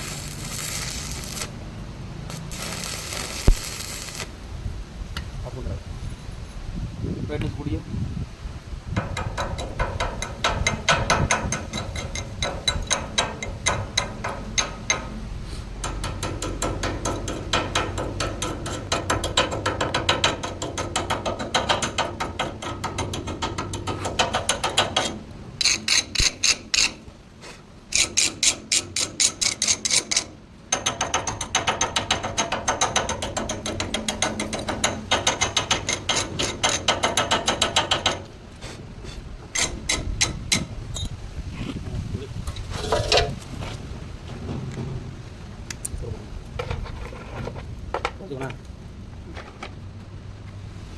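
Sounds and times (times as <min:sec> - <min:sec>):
metal-on-metal clicking strikes: 0:09.0 - 0:15.2, 0:15.8 - 0:27.0, 0:27.9 - 0:38.4.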